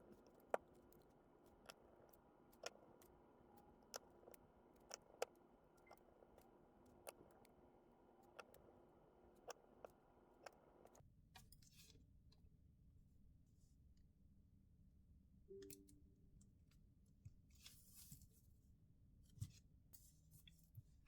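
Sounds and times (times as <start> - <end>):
faint steady hum: 0.0 - 21.0.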